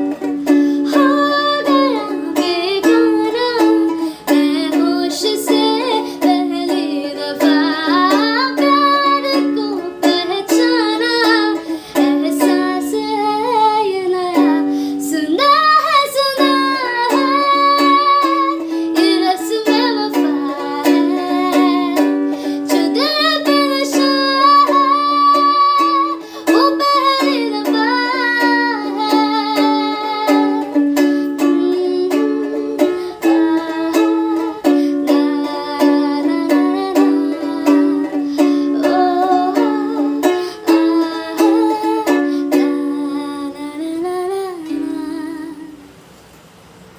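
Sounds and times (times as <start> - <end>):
person singing: 0.0 - 45.9
ukulele strumming: 0.0 - 45.9.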